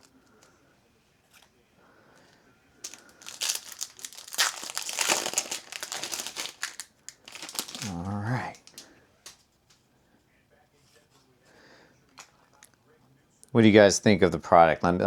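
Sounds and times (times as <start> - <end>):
foil wrapper crinkling and tearing: 2.8 - 9.4.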